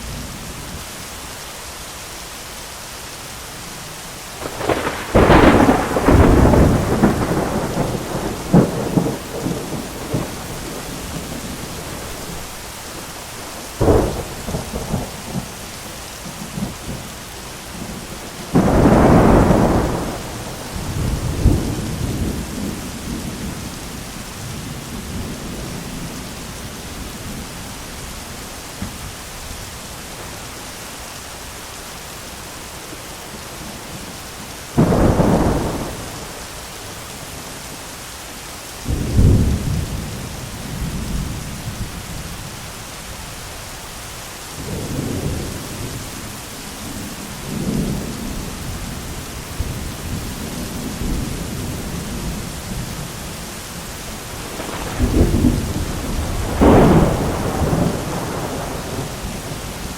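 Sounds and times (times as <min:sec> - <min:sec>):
steady rain: 0:00.0 - 0:59.9
thunderclaps: 0:04.4 - 0:15.6, 0:17.8 - 0:23.7, 0:34.8 - 0:36.5, 0:54.3 - 0:59.9.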